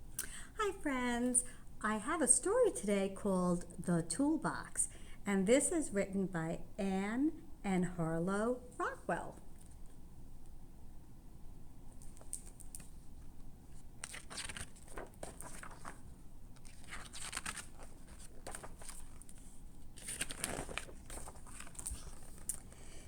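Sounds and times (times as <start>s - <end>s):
paper pages rustling: 12.0s - 22.8s.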